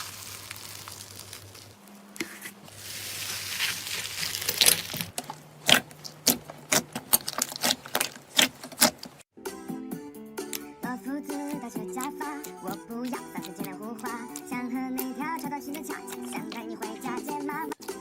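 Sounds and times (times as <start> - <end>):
slime squeezed by hand: 0.0 - 1.8, 2.5 - 8.9
music: 9.3 - 18.0.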